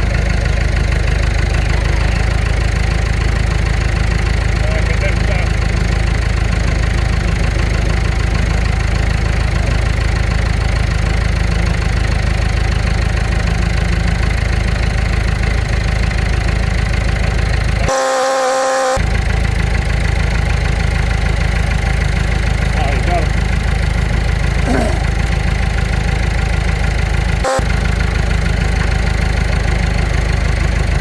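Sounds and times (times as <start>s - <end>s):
excavator diesel engine running: 0.0s - 31.0s
steady pitched tone: 17.9s - 19.0s, 27.4s - 27.9s.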